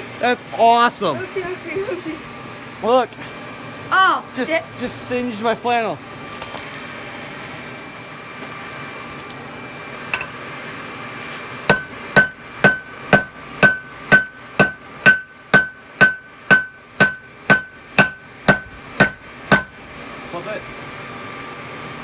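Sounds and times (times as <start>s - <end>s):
hammer striking hot steel on anvil: 10.1s - 10.4s, 11.7s - 19.8s.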